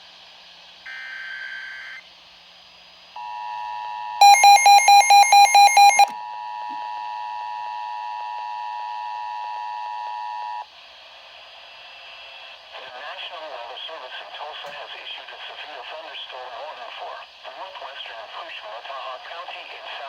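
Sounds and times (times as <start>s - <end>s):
rapid loud beeping: 4.2s - 6.1s
two-tone attention signal: 4.2s - 6.1s.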